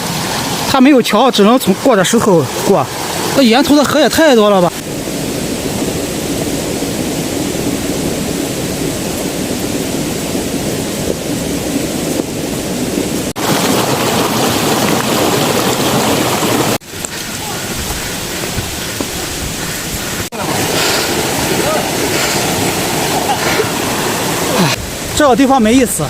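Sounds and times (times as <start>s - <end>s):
stream rushing over rocks: 0.0s - 26.0s.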